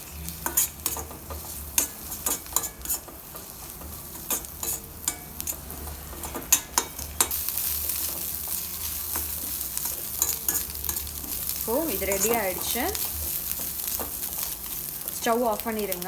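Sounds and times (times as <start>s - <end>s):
food sizzling in oil: 0.0s - 16.0s
metal utensil scraping pan: 0.0s - 16.0s.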